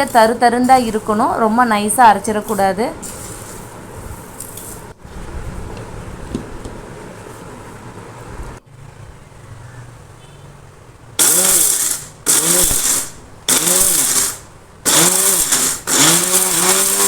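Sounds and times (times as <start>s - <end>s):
mixer grinder motor grinding: 11.2s - 17.0s.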